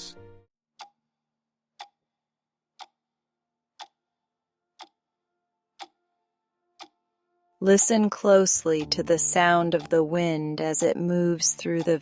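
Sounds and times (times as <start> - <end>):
sharp ticks: 1.8 - 2.0, 2.8 - 3.0, 3.8 - 4.0, 4.8 - 5.0, 7.7 - 12.0.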